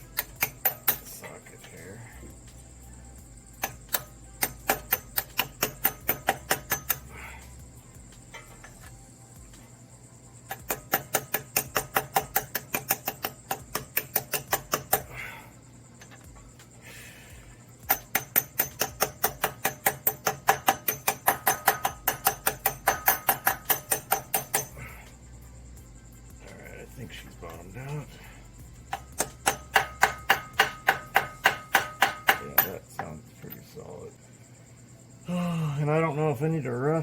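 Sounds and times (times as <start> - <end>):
hammer tapping on metal socket: 0.1 - 1.2, 3.6 - 7.1, 10.5 - 15.1, 17.8 - 24.8, 28.9 - 33.1.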